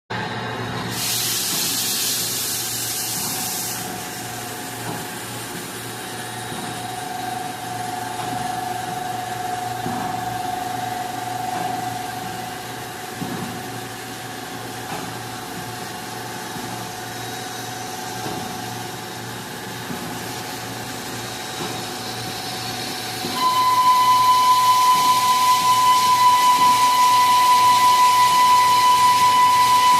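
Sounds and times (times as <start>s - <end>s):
hiss: 0.9s - 5.5s
high machine whine: 2.9s - 29.9s.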